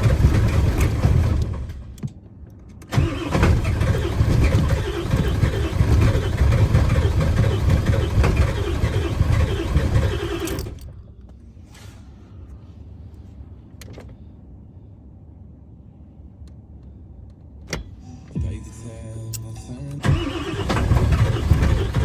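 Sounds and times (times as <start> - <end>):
diesel engine running unevenly: 0.0 - 2.0, 2.9 - 10.9, 20.0 - 22.0.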